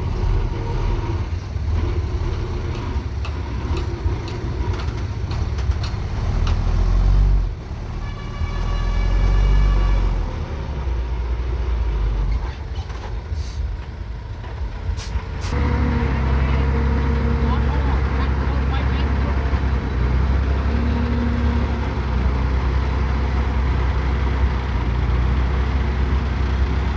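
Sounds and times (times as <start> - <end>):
heavy diesel engines running: 0.0 - 26.9
pitched horn tone: 8.0 - 10.4
short hisses: 13.4 - 13.7, 15.0 - 15.6.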